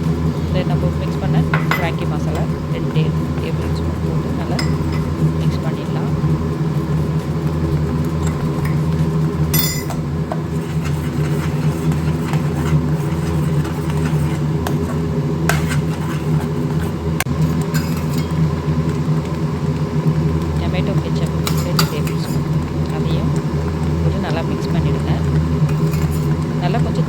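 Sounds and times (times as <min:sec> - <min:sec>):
low mechanical hum: 0:00.0 - 0:27.0
spoon scraping a pan: 0:03.5 - 0:05.6, 0:06.9 - 0:18.4, 0:21.2 - 0:22.5, 0:25.6 - 0:26.4.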